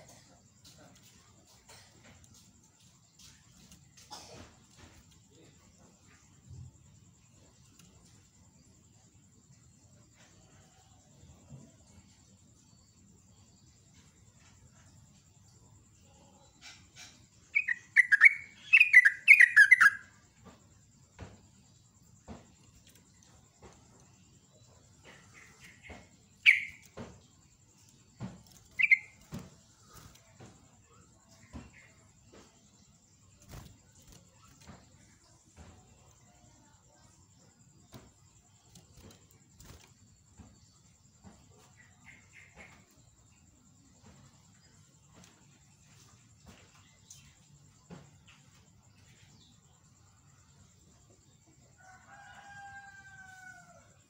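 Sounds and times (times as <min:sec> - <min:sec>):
rooster crowing: 0:51.8 - 0:54.0.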